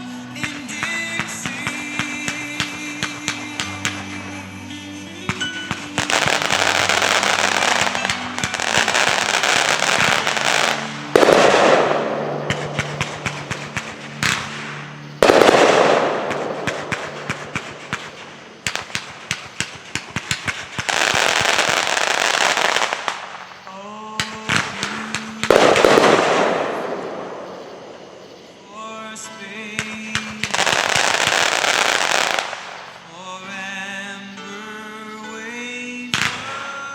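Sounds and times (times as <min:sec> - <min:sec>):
loud firework bursts: 0:00.0 - 0:04.6, 0:05.3 - 0:28.6, 0:29.4 - 0:33.2, 0:36.1 - 0:36.6
fireworks crackling and popping: 0:00.0 - 0:34.6, 0:35.3 - 0:36.9.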